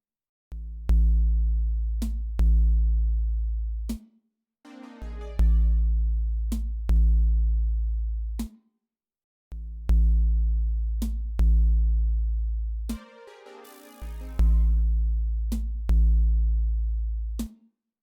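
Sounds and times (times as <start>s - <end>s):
synthesized bass notes: 4.7s - 6.1s, 13.0s - 15.1s
drum-machine beat: 4.8s - 5.8s, 13.0s - 14.8s.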